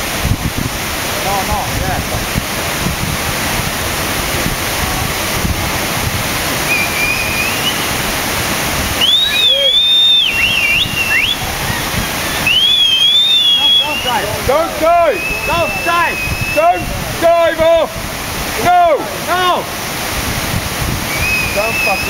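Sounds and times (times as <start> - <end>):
waterfall rushing: 0.0 - 22.0
shrill wavering whistling: 6.7 - 8.0, 9.0 - 14.3, 15.1 - 16.9, 21.1 - 22.0.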